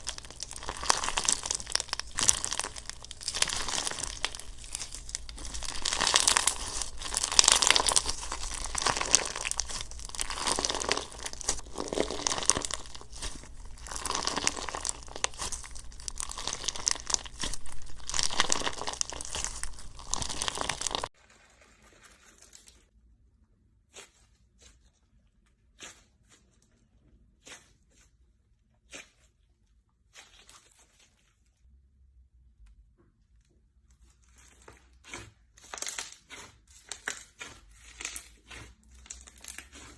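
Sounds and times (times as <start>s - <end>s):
slime crackling and popping: 0.0s - 22.9s, 34.1s - 39.9s.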